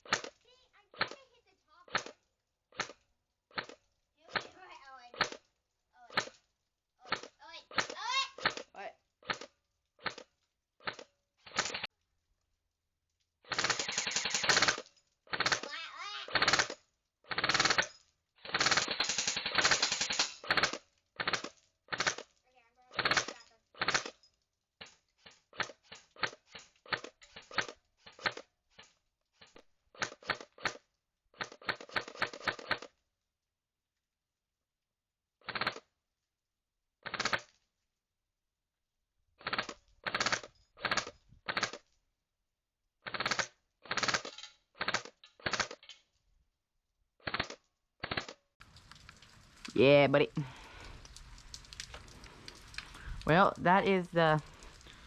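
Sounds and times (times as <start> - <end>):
airsoft rifle full-auto bursts: 10.8 - 11.9, 13.4 - 22.3, 22.9 - 24.2, 35.4 - 35.9, 37.1 - 37.5, 39.4 - 41.9, 43.1 - 45.8, 47.2 - 48.4.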